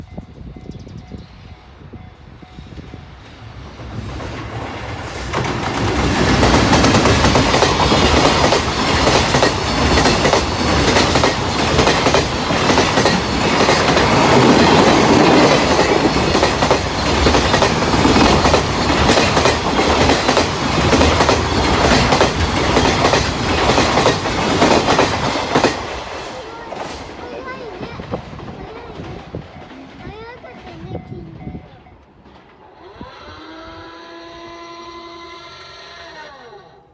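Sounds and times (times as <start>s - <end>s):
electric locomotive passing: 0.0s - 36.1s
wheel clatter over rail joints: 4.2s - 30.8s.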